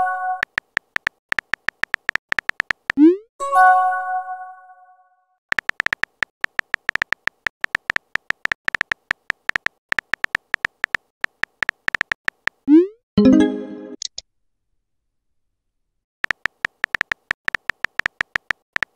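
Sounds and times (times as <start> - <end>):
keyboard typing clicks: 0.4 - 3.1, 5.5 - 12.8, 16.2 - 18.9.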